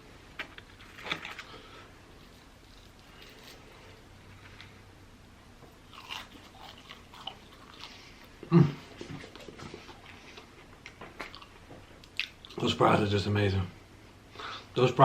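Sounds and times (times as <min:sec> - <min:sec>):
person chewing fries: 0:00.3 - 0:04.8, 0:05.8 - 0:12.6.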